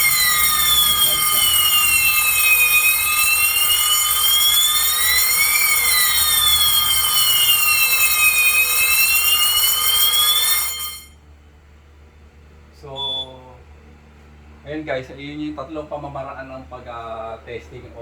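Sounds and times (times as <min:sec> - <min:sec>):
fire alarm wailing: 0:00.0 - 0:11.2, 0:13.0 - 0:13.3.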